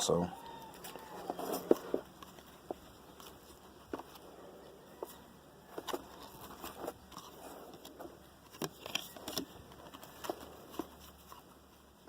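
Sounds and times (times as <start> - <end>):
trading cards clicking and rustling: 0.6 - 11.6.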